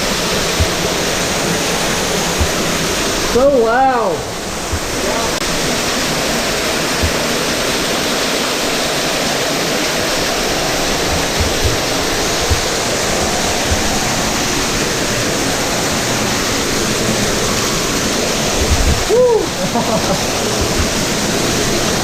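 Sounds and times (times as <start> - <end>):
low thumps: 0.0 - 3.3, 4.5 - 5.2, 6.9 - 7.5, 10.3 - 15.8, 18.5 - 19.1, 20.3 - 21.3
waterfall rushing in a cave: 0.0 - 22.0.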